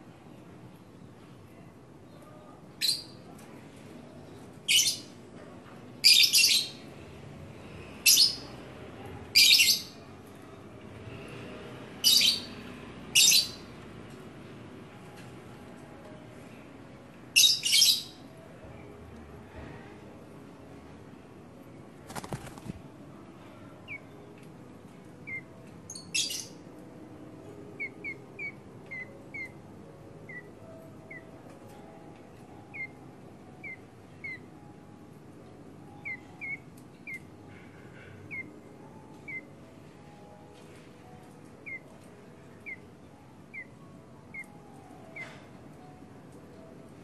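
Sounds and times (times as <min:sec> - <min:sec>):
wing flutter: 0:22.0 - 0:22.9
bird chirping: 0:27.8 - 0:29.6, 0:32.6 - 0:33.0, 0:33.6 - 0:34.5, 0:35.9 - 0:38.5, 0:39.1 - 0:39.5, 0:41.6 - 0:41.9, 0:42.5 - 0:42.9, 0:43.5 - 0:45.5.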